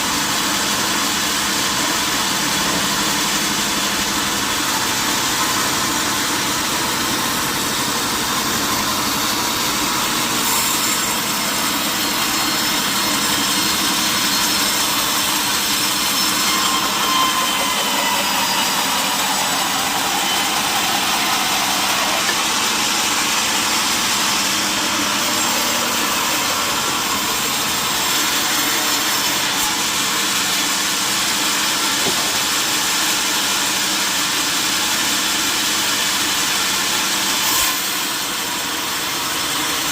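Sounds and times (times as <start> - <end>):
saw cutting through log: 0.0 - 39.9
sawmill machinery running: 0.0 - 39.9.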